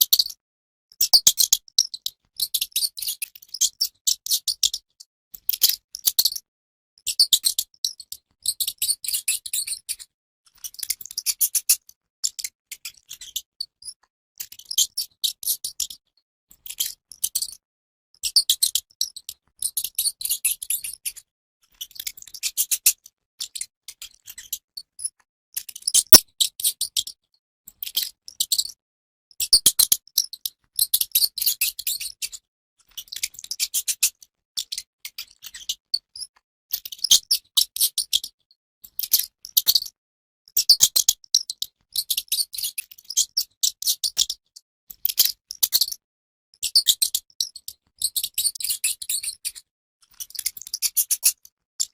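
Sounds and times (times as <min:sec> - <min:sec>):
mouse squeaking: 0:01.0 - 0:03.1, 0:25.8 - 0:26.5, 0:29.4 - 0:32.4, 0:40.6 - 0:44.4, 0:45.1 - 0:45.9, 0:46.6 - 0:49.6.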